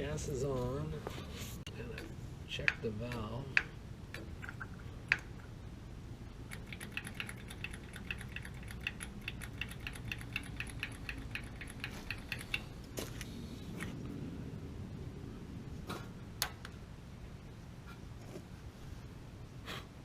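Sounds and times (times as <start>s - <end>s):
rapid mechanical clicks: 6.4s - 12.7s.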